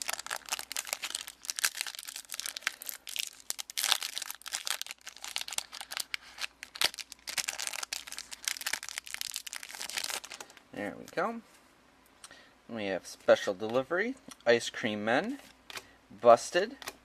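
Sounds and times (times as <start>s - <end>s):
foil pack crinkling and tearing: 0.0s - 10.5s.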